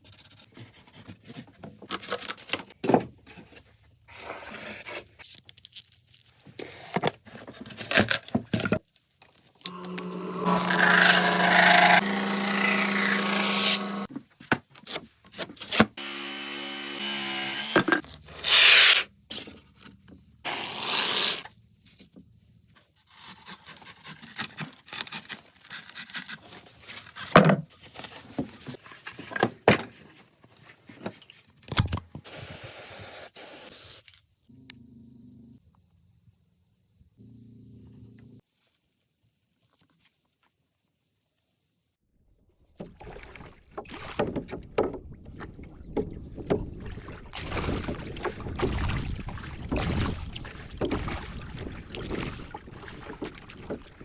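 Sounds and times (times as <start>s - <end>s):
power tool running: 9.7s - 14.1s, 16.0s - 18.0s
sawing: 9.7s - 14.1s, 15.9s - 19.1s, 20.5s - 21.5s.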